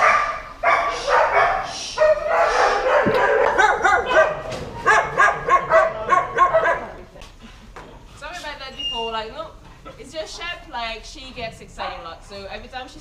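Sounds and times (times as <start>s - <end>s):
dog barking excitedly: 0.0s - 7.0s.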